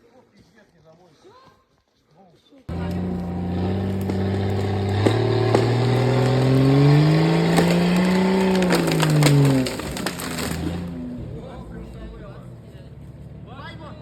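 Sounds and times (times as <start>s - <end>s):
engine running under load: 2.7s - 14.0s
sharp cracks and snaps: 2.8s - 11.0s.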